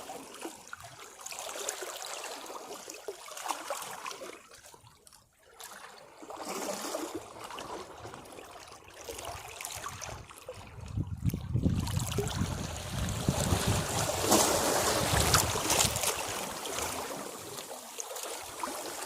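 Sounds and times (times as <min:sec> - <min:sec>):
waves washing against rocks: 0:11.0 - 0:19.0.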